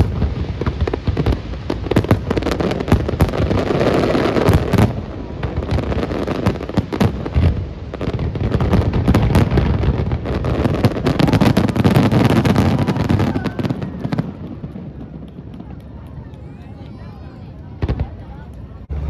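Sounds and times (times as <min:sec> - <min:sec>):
fireworks bangs and crackles: 0:00.0 - 0:19.0
heavy low rumble: 0:17.8 - 0:19.0.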